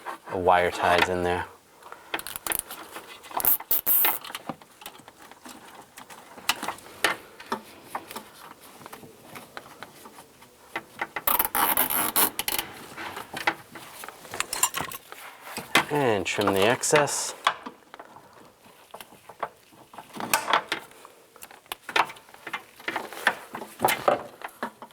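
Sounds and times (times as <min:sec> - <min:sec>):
wire ties clicking and rattling: 0:02.1 - 0:06.7, 0:11.0 - 0:12.7
wire tie rasping pulled tight: 0:03.4 - 0:04.2, 0:11.3 - 0:12.6.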